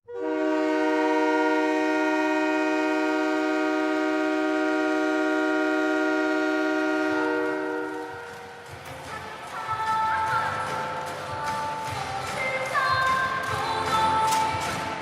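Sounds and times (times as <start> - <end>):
goal horn blast: 0.0 - 8.6.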